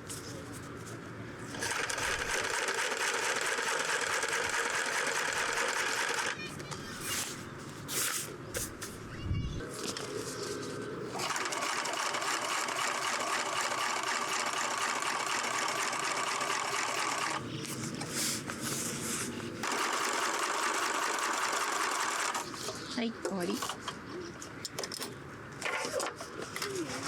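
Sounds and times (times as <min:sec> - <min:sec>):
sewing machine stitching: 0:01.5 - 0:06.4, 0:11.1 - 0:17.4, 0:19.6 - 0:22.7.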